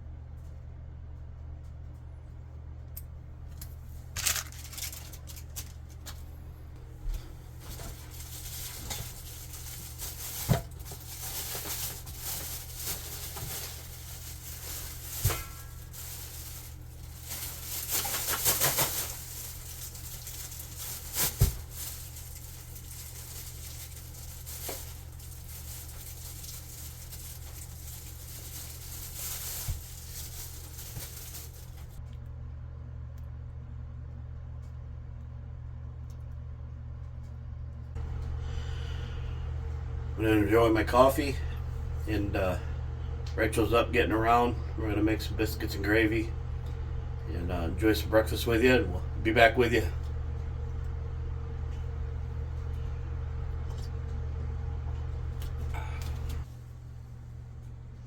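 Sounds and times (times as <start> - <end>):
steady low hum: 0.0 - 58.0
objects being handled: 4.0 - 6.3, 7.0 - 32.0.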